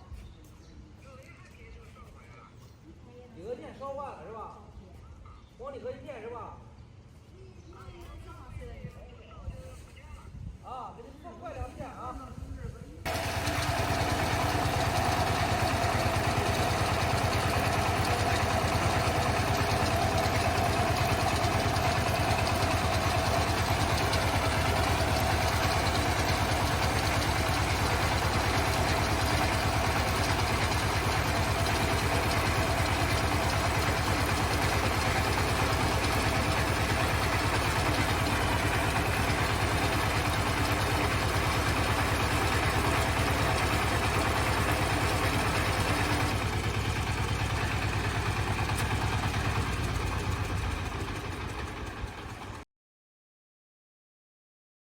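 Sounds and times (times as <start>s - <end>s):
tractor engine running: 13.1s - 52.6s.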